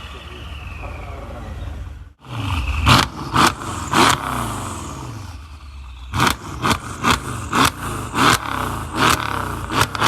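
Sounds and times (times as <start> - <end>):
car engine revving: 2.2 - 10.0.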